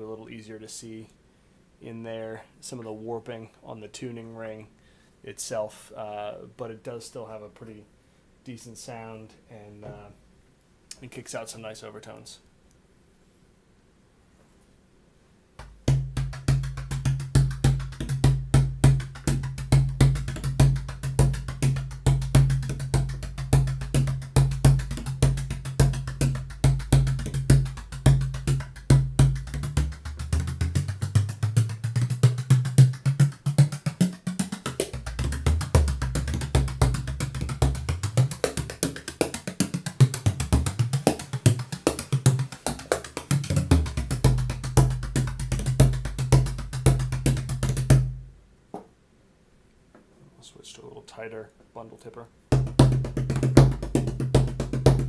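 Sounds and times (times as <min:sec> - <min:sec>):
frame drum played fast: 0:15.7 - 0:48.3, 0:52.5 - 0:55.0.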